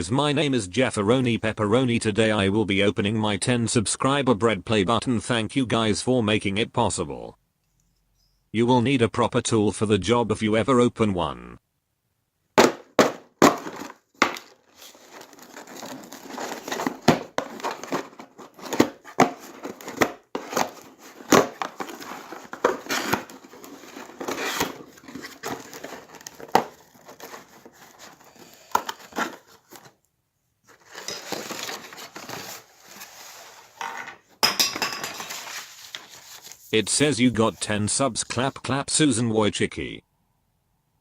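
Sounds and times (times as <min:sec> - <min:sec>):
packaging crinkling and tearing: 0:13.4 - 0:29.9, 0:30.7 - 0:33.1.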